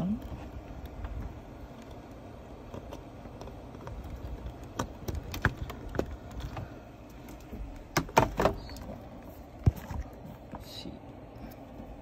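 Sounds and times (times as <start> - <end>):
low steady rumble: 0.0 - 12.0
plastic parts clicking and tapping: 2.6 - 8.9.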